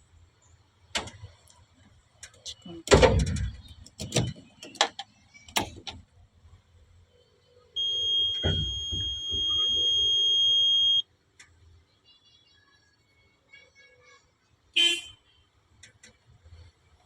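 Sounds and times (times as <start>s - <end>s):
electronic warning buzzer: 7.8s - 11.0s.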